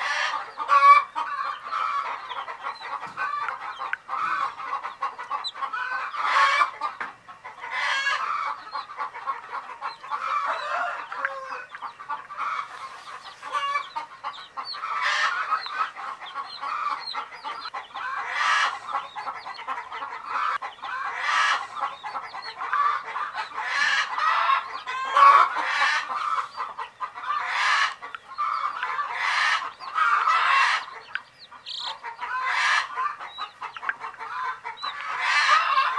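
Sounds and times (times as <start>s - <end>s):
baby chicks chirping: 0.0s - 35.9s.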